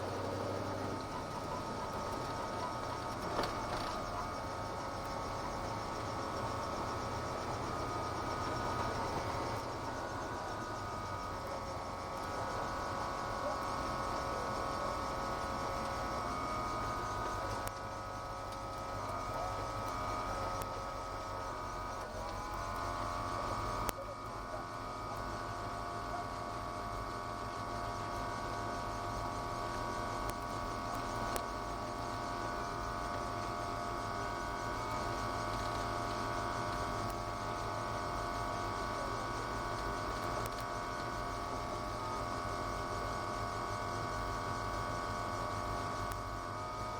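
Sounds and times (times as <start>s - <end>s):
car engine running: 0.0s - 17.9s.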